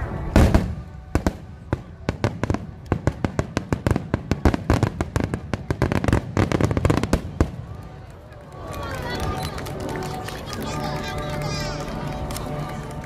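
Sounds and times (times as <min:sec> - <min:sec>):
fireworks exploding: 0:00.0 - 0:08.0.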